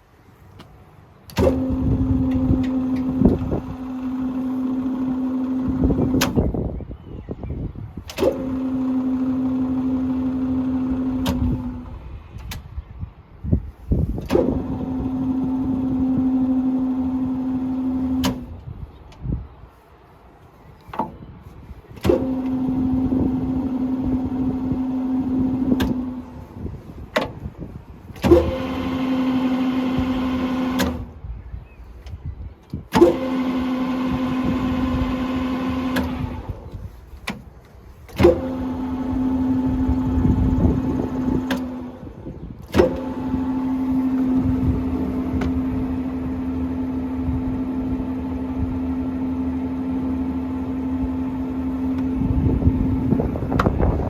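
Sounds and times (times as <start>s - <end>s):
lathe drive hum: 21.9s - 31.2s, 32.9s - 54.0s
lathe switch click: 53.5s - 53.8s.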